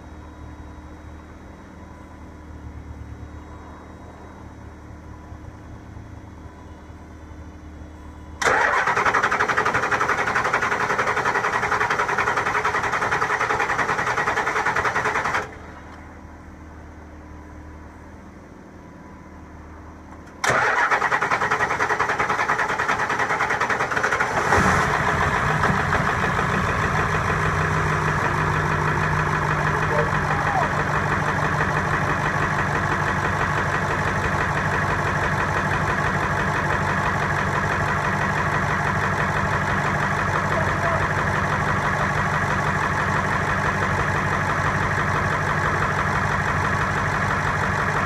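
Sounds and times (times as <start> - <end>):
diesel engine rough idle: 0.0 - 48.0
diesel engine cranking: 8.4 - 16.0, 20.1 - 48.0.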